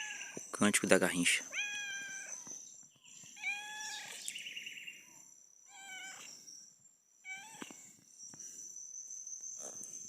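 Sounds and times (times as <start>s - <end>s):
high insect drone: 0.0s - 10.0s
cat meowing: 1.5s - 2.5s, 3.4s - 4.1s, 5.7s - 6.3s, 7.2s - 7.8s.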